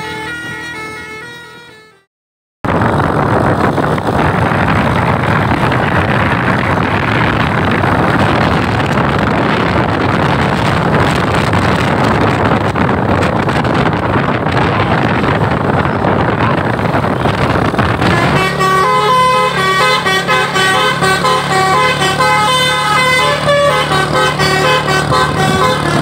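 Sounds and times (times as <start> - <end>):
multi-note bus horn tune: 0.0 - 2.1, 18.0 - 26.0
road noise from moving vehicle: 0.0 - 26.0
wind buffeting microphone: 2.6 - 26.0.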